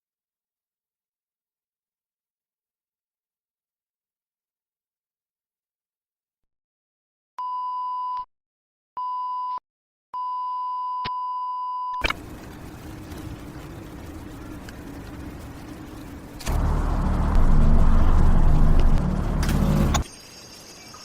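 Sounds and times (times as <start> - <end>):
steady hiss: 12.1 - 21.0.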